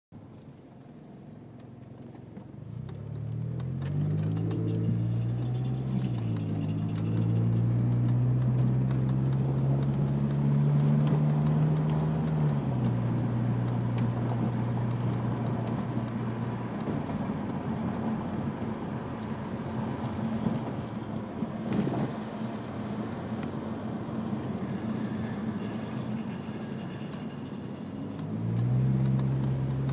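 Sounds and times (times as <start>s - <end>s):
car engine revving: 2.8s - 20.8s.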